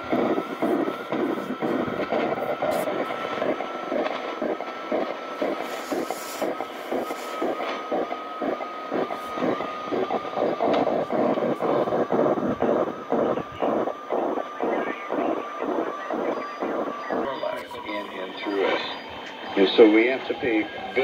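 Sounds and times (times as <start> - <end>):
pulsing radio static: 0.0 - 21.0.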